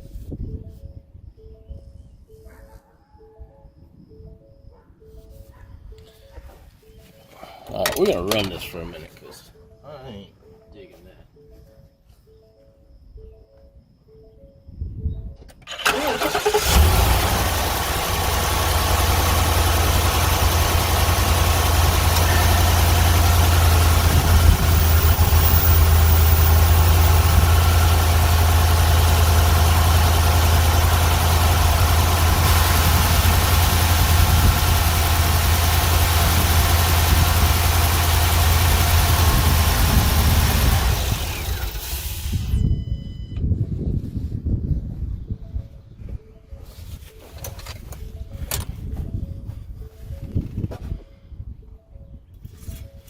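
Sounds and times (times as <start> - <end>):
truck engine starting and idling: 15.6 - 43.0.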